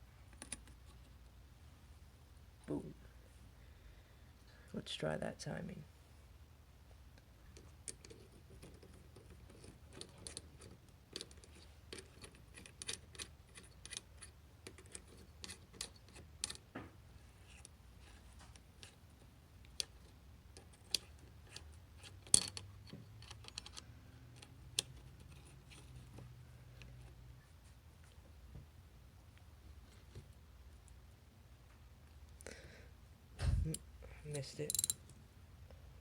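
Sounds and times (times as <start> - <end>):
metallic clicks and taps: 34.7 - 35.2.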